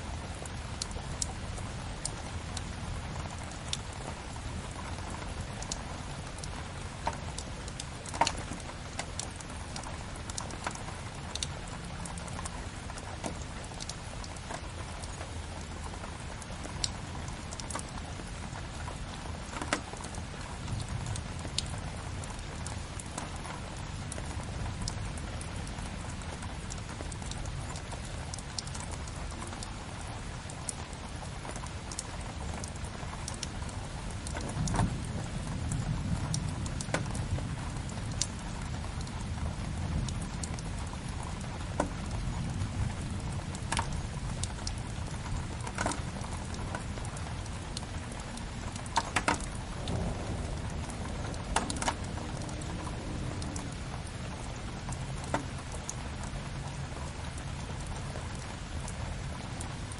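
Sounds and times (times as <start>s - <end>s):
steady rain: 0.0s - 59.9s
fire crackling and popping: 41.2s - 56.0s.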